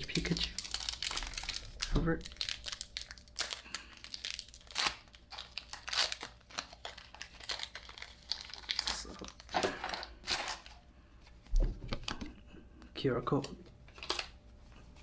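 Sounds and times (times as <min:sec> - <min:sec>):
foil wrapper crinkling and tearing: 0:00.0 - 0:10.8, 0:13.9 - 0:14.4.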